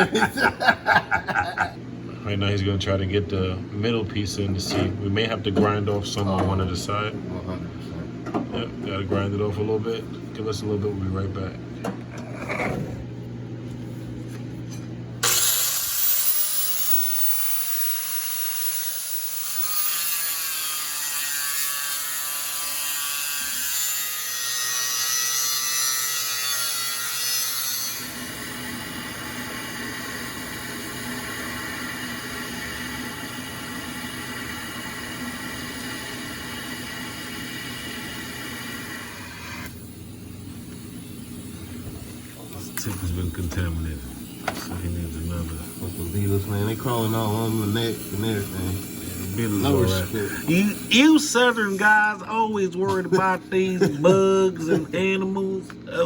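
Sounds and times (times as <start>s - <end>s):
angle grinder grinding steel: 15.2s - 39.8s, 44.8s - 51.0s.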